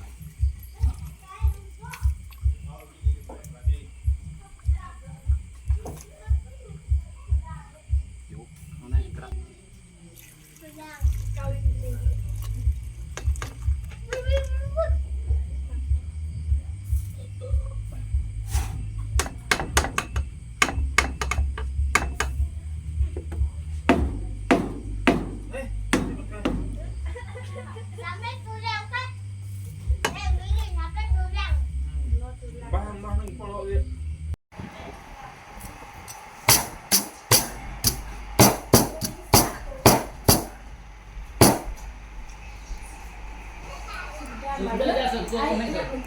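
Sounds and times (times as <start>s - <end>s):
knife chopping: 19.2s - 22.4s, 23.9s - 26.8s, 36.5s - 40.6s, 41.4s - 41.8s
soft knock: 23.2s - 26.9s.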